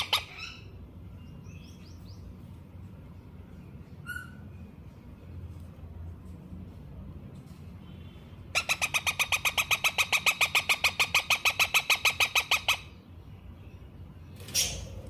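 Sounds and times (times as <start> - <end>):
parakeet chick chirping: 0.0 - 0.8, 8.5 - 13.0.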